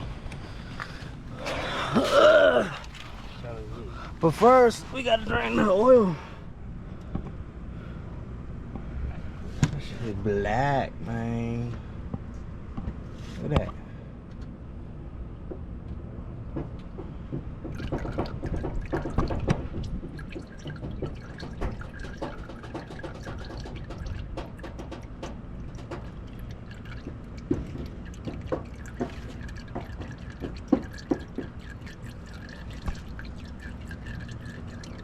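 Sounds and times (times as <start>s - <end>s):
engine oil splashing into container: 0.0s - 5.5s, 17.6s - 35.0s.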